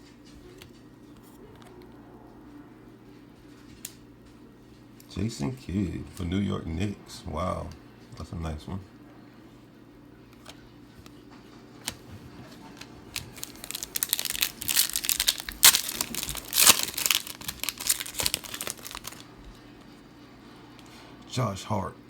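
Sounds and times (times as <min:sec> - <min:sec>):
plastic wrapper crinkling: 0:12.7 - 0:19.3.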